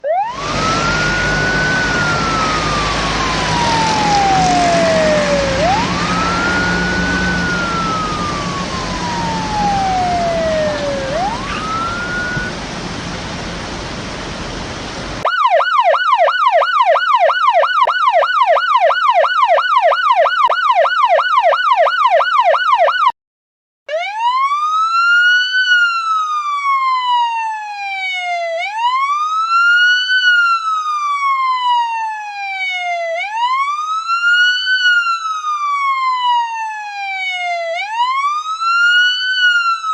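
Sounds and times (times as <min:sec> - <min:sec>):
police siren yelp: 0:00.0 - 0:12.6, 0:15.2 - 0:23.2, 0:23.9 - 0:39.9
police siren wailing: 0:00.0 - 0:12.7, 0:15.2 - 0:23.2, 0:23.9 - 0:39.9
traffic noise: 0:00.0 - 0:22.9.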